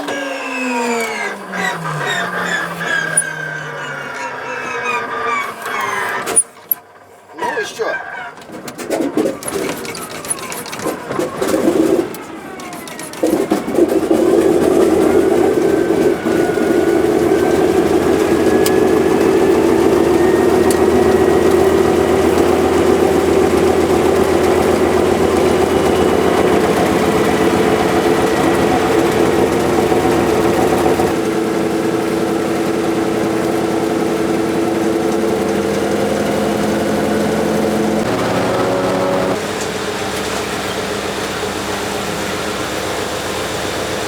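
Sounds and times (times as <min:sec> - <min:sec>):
propeller plane engine in cabin: 0:00.0 - 0:44.0.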